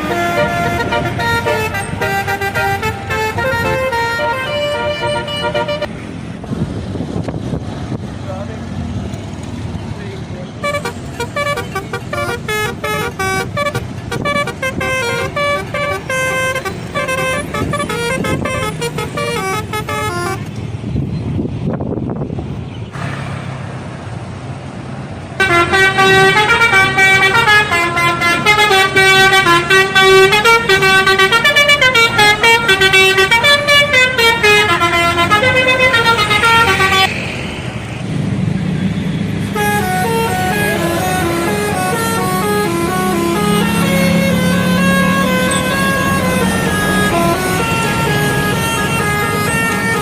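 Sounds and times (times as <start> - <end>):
bus horn playing tune: 0.0 - 6.0, 10.6 - 20.6, 25.4 - 37.2, 39.3 - 50.0.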